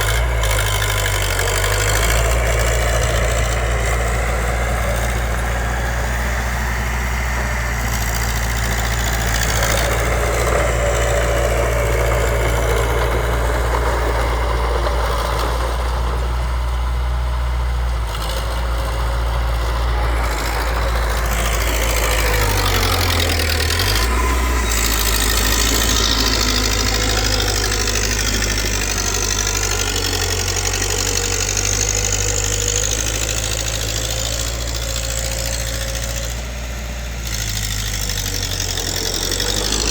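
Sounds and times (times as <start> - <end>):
heavy machinery diesel engine: 0.0 - 39.9.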